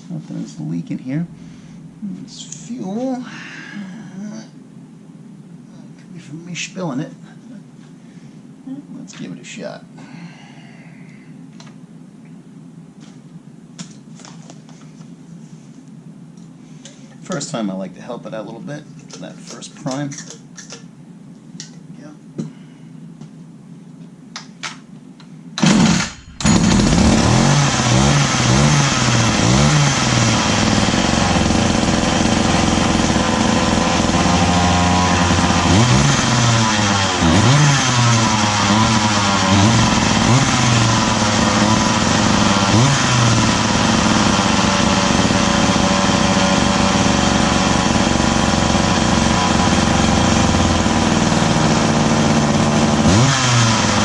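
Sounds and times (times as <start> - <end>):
chainsaw engine starting and revving: 25.6 - 54.0.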